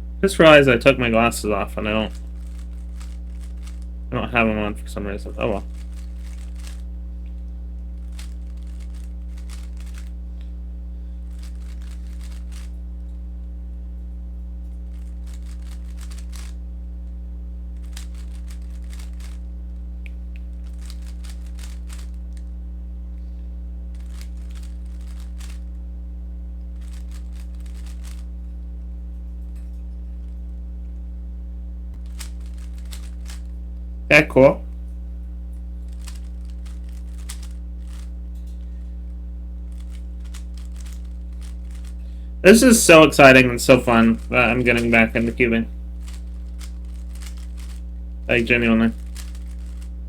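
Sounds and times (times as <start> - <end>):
steady low hum: 0.0 - 50.0
plastic cube clicking and clacking: 5.8 - 6.8, 8.1 - 10.1, 11.4 - 12.7, 15.3 - 16.5, 17.9 - 19.4, 20.7 - 22.2, 24.0 - 25.6, 26.8 - 28.2, 32.1 - 33.4, 36.0 - 38.1, 39.8 - 41.9, 46.1 - 47.8, 48.9 - 49.9.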